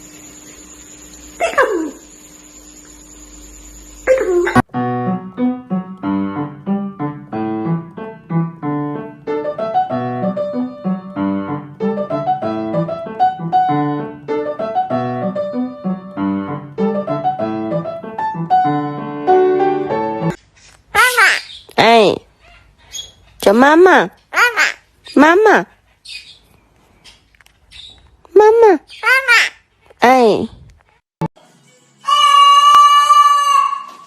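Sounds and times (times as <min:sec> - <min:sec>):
piano music: 0:04.3 - 0:20.4.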